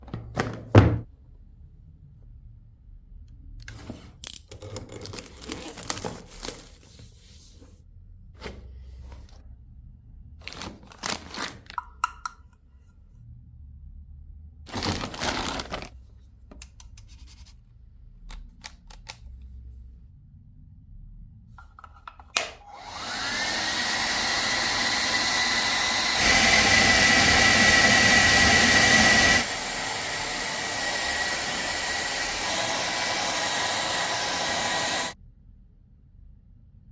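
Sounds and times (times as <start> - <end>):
hair dryer switch click: 22.4 - 23.4
hair dryer blowing: 22.4 - 35.2.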